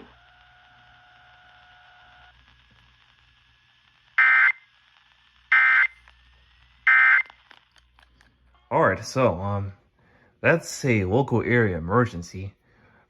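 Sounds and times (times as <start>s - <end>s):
digital data tone bursts: 5.5s - 6.0s.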